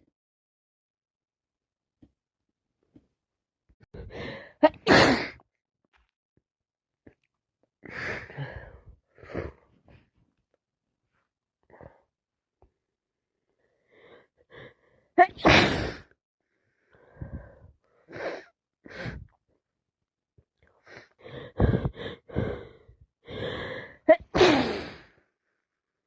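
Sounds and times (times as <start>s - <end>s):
person sneezing: 4.6s - 5.4s, 15.2s - 16.1s, 24.1s - 25.0s.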